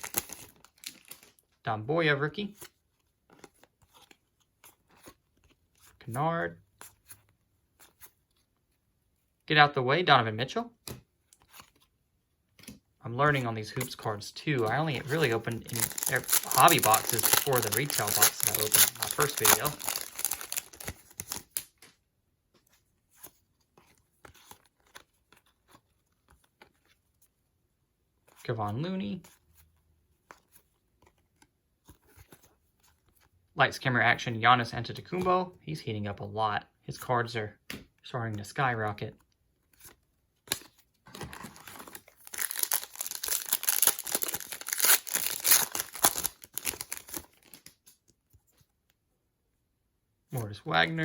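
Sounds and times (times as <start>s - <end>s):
plastic wrapper crinkling and tearing: 0.0s - 1.5s, 14.6s - 21.8s, 40.5s - 48.0s.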